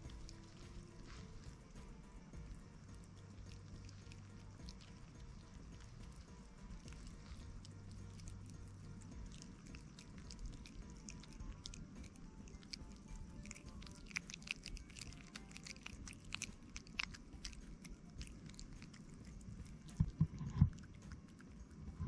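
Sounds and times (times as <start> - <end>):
low thumps: 0.0 - 13.9
crunchy chewing: 0.0 - 22.0.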